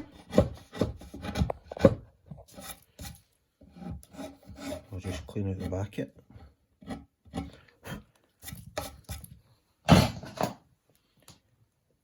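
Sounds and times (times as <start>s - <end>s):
chisel scraping wood: 0.0s - 9.4s.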